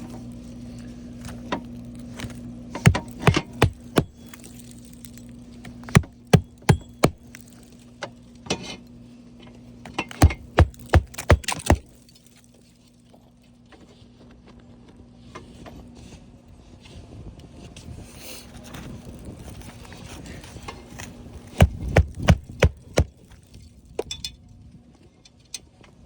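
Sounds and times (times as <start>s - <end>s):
hammer striking roofing nails: 2.8s - 4.7s, 5.8s - 7.5s, 9.9s - 12.0s, 21.6s - 23.1s.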